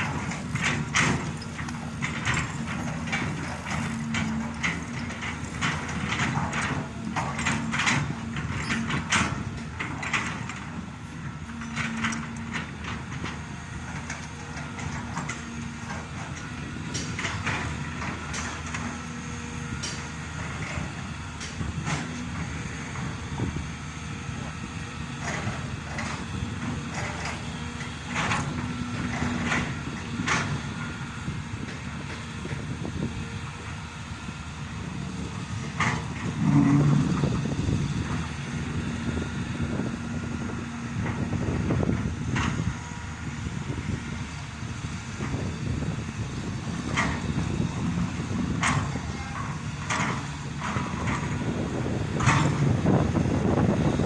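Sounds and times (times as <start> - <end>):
knocks and clanks: 0.0 - 10.8, 35.6 - 38.2
excavator diesel engines running: 0.0 - 54.0.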